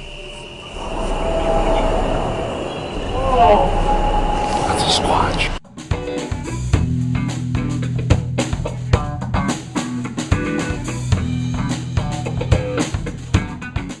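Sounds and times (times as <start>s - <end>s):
drum kit beat: 5.7s - 14.0s
bass line: 6.5s - 13.6s.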